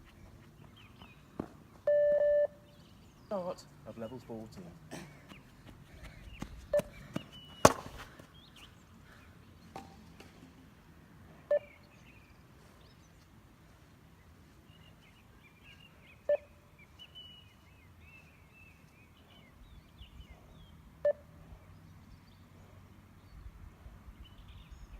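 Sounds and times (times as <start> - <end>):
faint bird chirping: 0.0 - 7.7, 11.3 - 24.9
short electronic beeps: 1.9 - 2.6, 11.5 - 11.8.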